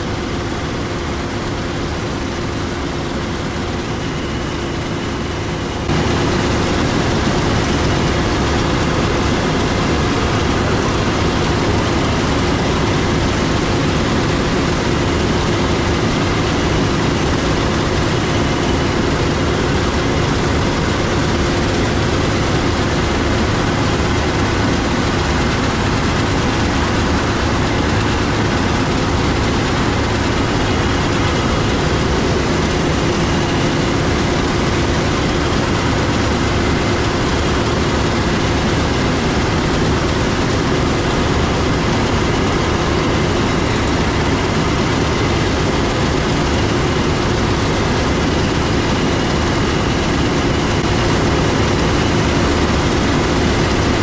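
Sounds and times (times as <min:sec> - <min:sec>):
diesel machinery droning: 0:00.0 - 0:54.0.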